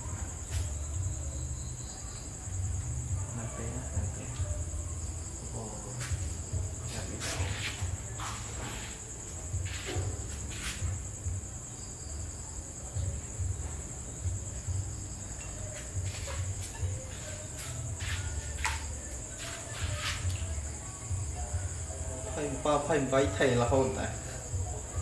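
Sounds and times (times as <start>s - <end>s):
high-pitched insect chorus: 0.0s - 25.0s.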